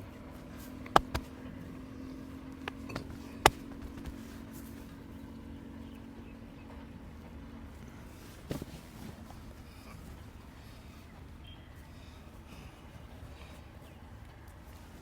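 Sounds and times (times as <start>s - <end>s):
steady low hum: 0.0s - 5.2s
hands slapping skin: 0.8s - 1.3s, 3.4s - 4.4s.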